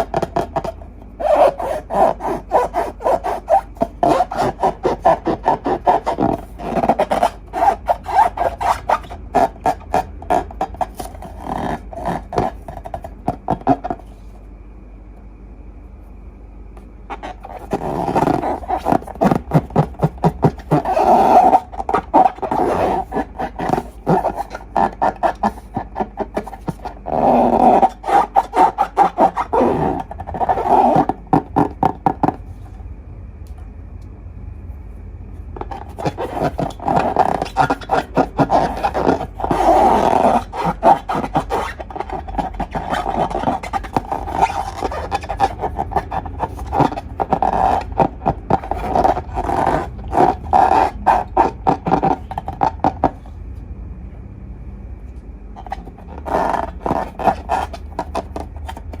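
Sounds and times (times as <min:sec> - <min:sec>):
balloons rubbing squeaks: 0:00.0 - 0:14.3, 0:17.1 - 0:32.8, 0:35.6 - 0:53.3, 0:55.6 - 0:59.0
slime squelching: 0:17.1 - 0:32.6, 0:35.6 - 0:53.2.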